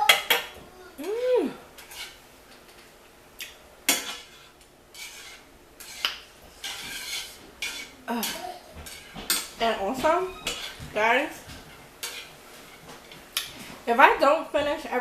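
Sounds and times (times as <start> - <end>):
utensils clinking against bowl: 5.8 - 12.3.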